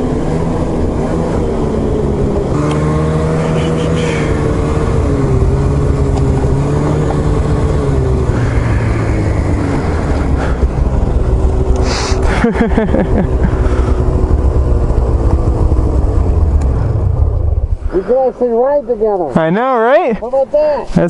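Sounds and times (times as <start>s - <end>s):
snowmobile engine running: 0.0s - 20.7s
brief rush of hiss: 11.8s - 12.2s.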